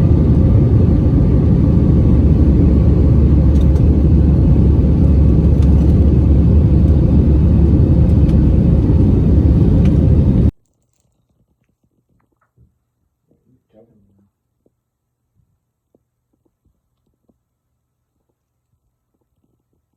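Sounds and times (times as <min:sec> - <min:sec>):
airliner cabin rumble: 0:00.0 - 0:10.5.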